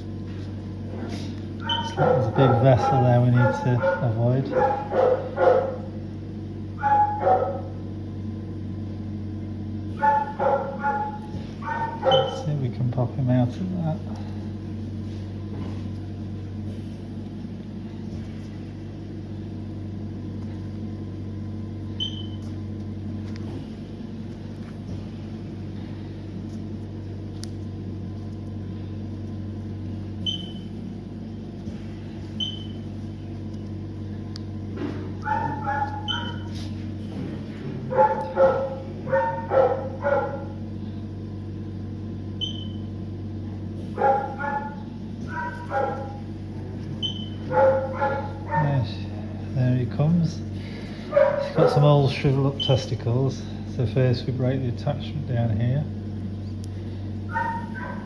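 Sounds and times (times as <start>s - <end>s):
steady low hum: 0.0s - 58.0s
dog barking: 1.6s - 5.9s, 6.8s - 7.8s, 9.9s - 12.5s, 35.2s - 36.6s, 37.8s - 40.6s, 43.9s - 46.3s, 47.5s - 49.1s, 51.1s - 52.0s, 57.3s - 58.0s.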